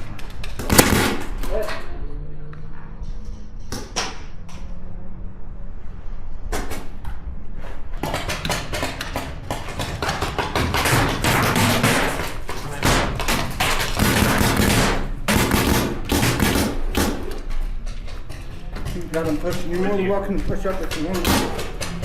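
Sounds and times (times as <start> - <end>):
paintball markers firing: 0.1 - 1.8, 8.0 - 17.5, 19.4 - 22.0.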